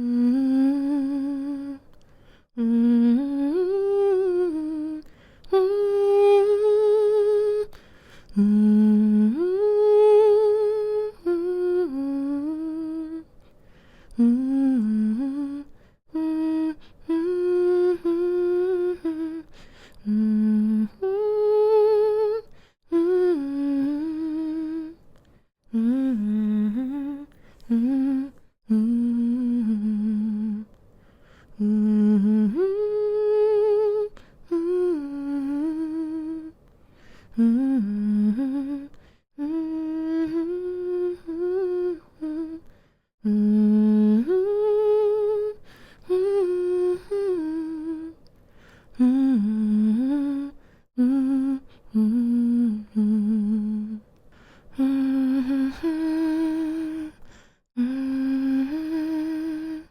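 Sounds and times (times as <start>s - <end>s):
woman humming a lullaby: 0.0s - 1.9s, 2.6s - 7.8s, 37.4s - 42.6s.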